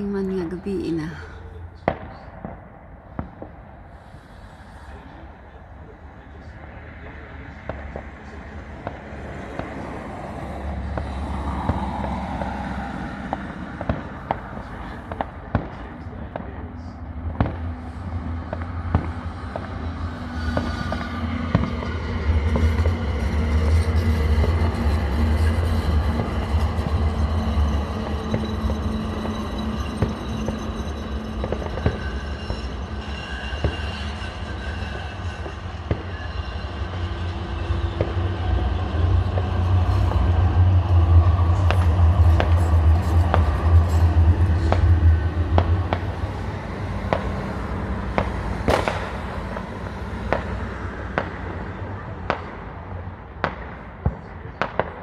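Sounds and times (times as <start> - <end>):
low rumble: 0.0 - 54.0
firework bangs and cracks: 1.8 - 4.7, 7.6 - 10.1, 10.8 - 23.0, 28.3 - 36.7, 41.6 - 44.0, 44.6 - 55.0.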